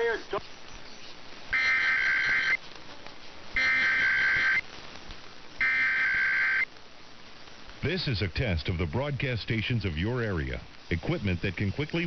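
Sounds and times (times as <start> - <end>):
two-tone digital data warble: 1.6 - 2.6, 3.6 - 4.6, 5.6 - 6.6.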